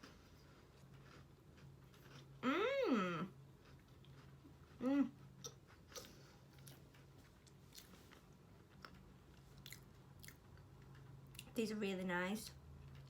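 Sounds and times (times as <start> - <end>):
biscuit crunching and chewing: 0.0 - 11.6, 12.6 - 13.0
person humming: 2.4 - 3.3, 4.8 - 5.2.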